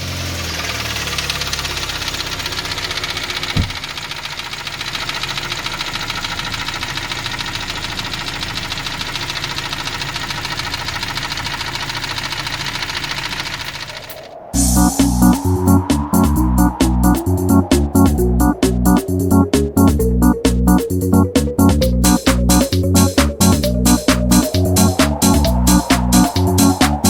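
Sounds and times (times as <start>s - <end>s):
car engine running with knock: 0.0s - 14.2s.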